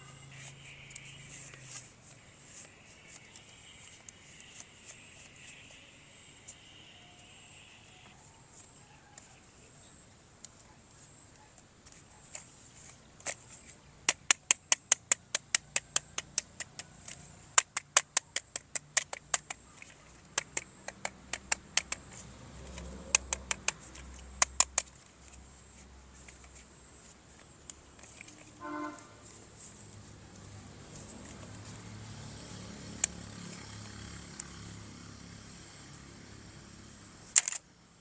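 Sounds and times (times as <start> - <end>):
plastic toy gun clicking: 13.2 - 25.4, 37.3 - 37.6.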